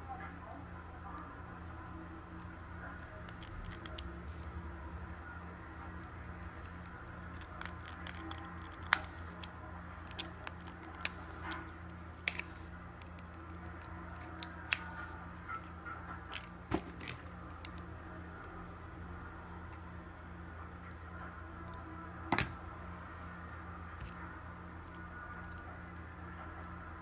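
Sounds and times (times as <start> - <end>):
low electrical hum: 0.0 - 27.0.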